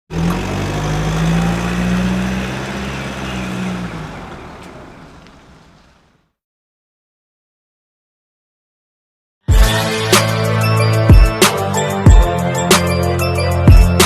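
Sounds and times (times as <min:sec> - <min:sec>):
engine-like rumble: 0:00.1 - 0:06.2.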